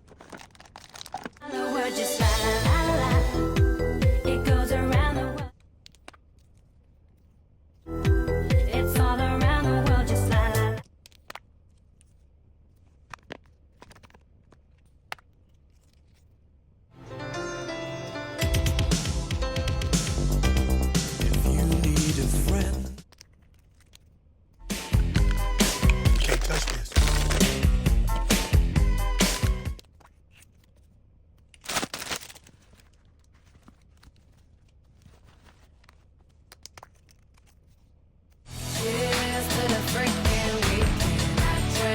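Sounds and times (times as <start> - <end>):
packaging crinkling: 0.0 - 1.4, 10.9 - 16.4, 25.1 - 28.4, 29.7 - 38.0
background music: 1.4 - 5.5, 7.9 - 10.8, 17.0 - 23.0, 24.6 - 29.8, 38.5 - 41.9
faint clicks and handling noises: 29.8 - 38.5.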